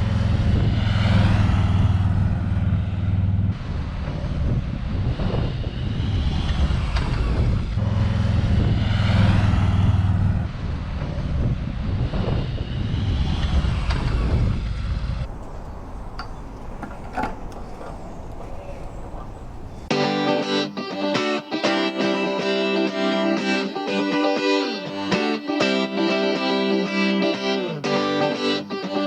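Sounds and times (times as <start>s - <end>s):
motorcycle engine rumbling: 15.2s - 19.9s.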